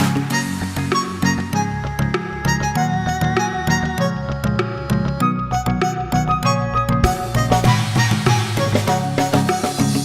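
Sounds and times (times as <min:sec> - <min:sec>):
plucked string melody: 0:00.0 - 0:09.9.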